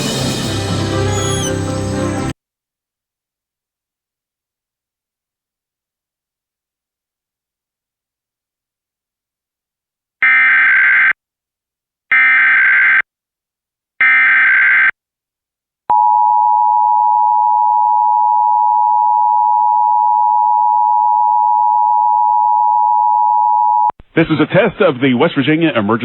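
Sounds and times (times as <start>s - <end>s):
digital data tone bursts: 1.0s - 1.7s.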